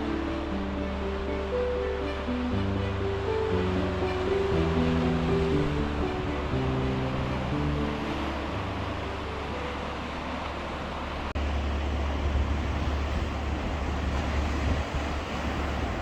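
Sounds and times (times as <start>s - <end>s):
wind buffeting microphone: 11.4s - 16.0s.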